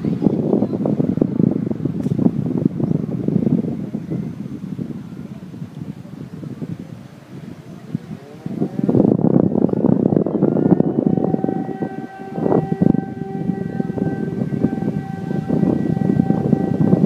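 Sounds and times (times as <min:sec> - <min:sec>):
wind noise on microphone: 0:00.0 - 0:17.0
motor siren wailing: 0:10.0 - 0:17.0.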